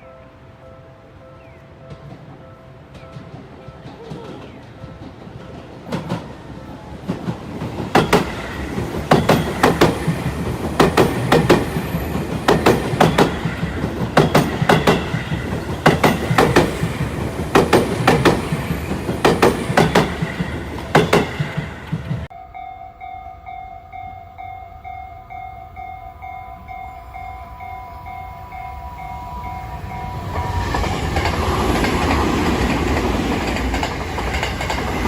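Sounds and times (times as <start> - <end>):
train rumble: 1.8 - 35.0
train wheels clacking over rail joints: 7.1 - 22.3, 30.5 - 35.0.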